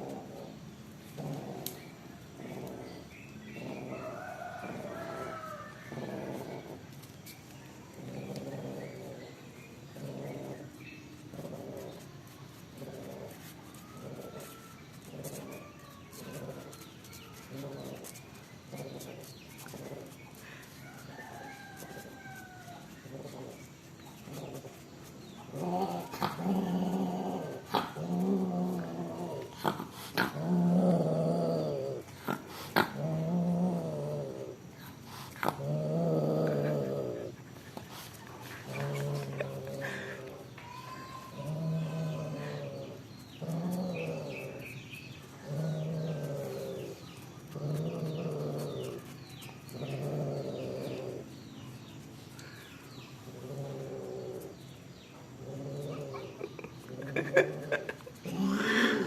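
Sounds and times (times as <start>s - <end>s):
cats caterwauling: 24.2s - 34.7s, 35.4s - 44.8s, 55.4s - 59.0s.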